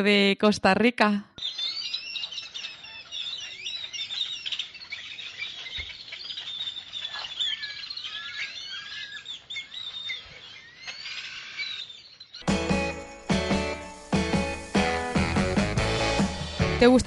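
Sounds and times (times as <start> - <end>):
chorus of birds chirping: 1.0 - 17.0.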